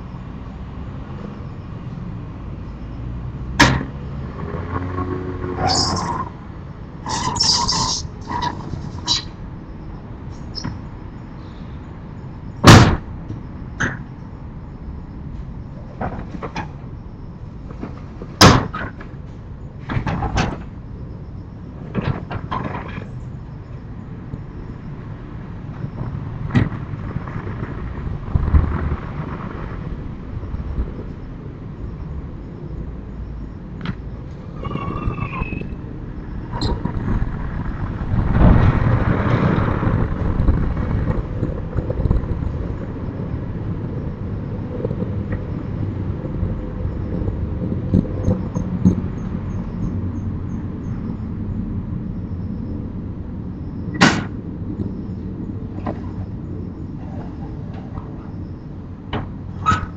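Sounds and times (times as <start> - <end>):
vehicle passing: 0.0 - 9.2
road traffic rumble: 0.0 - 59.9.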